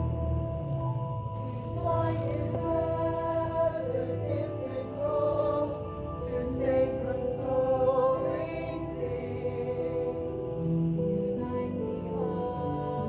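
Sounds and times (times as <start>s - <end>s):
music with long held notes: 0.0s - 13.0s.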